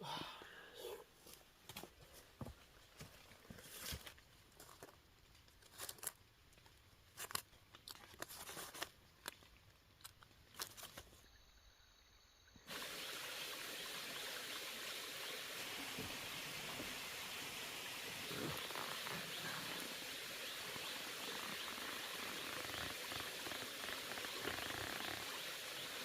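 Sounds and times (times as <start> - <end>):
short crunches and snaps: 5.5 - 11.1
steady rushing hiss: 12.6 - 26.0.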